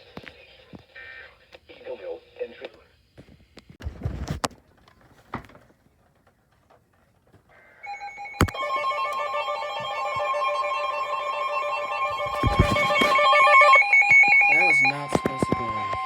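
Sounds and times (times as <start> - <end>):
warbling electronic alarm: 7.8 - 16.0
knocks and clicks: 12.1 - 13.3.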